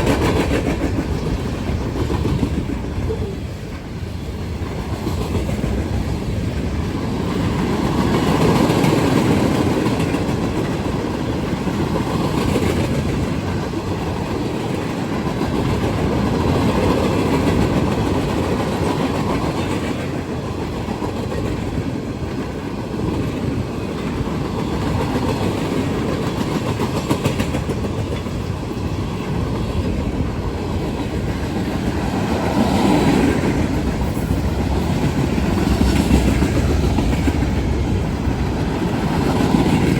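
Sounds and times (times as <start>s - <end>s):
train wheels clicking on rails: 0.0s - 39.9s.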